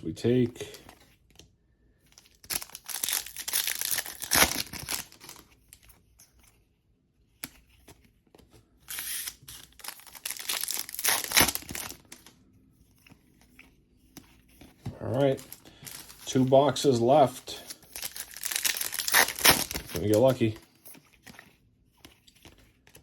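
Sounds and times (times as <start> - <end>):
plastic wrapping torn and crinkled: 2.2 - 5.8, 8.9 - 12.4, 15.0 - 20.6.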